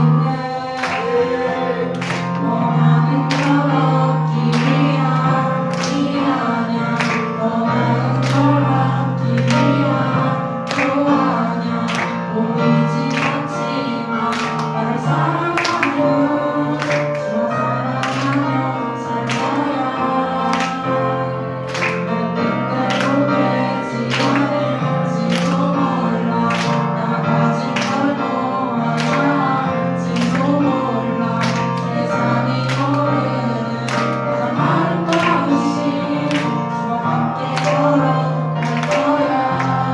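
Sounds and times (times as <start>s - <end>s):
group singing: 0.0s - 39.9s
worship band playing: 0.0s - 39.9s.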